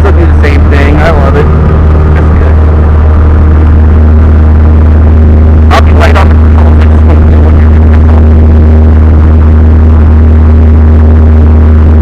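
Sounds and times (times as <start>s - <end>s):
voice burst: 0.0s - 9.4s
light aircraft engine and propeller: 0.0s - 12.0s.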